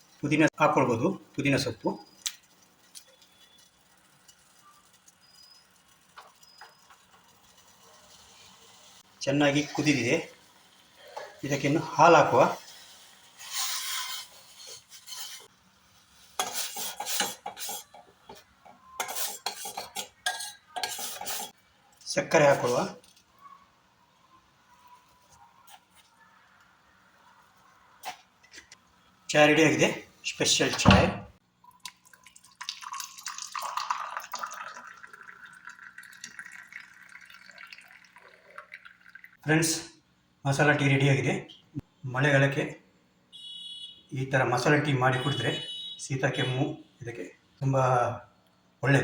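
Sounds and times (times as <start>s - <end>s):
spoon scraping pan: 9.6s - 21.6s
tea pouring into a cup: 31.6s - 39.4s.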